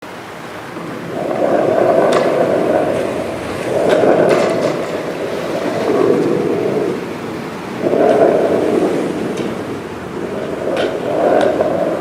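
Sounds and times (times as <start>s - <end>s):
rushing wave-like noise: 0.0s - 12.0s.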